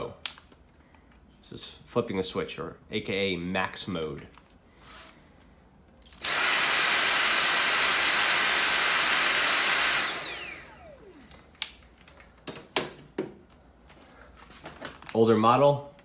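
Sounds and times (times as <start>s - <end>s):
cordless vacuum whining: 6.1s - 11.7s.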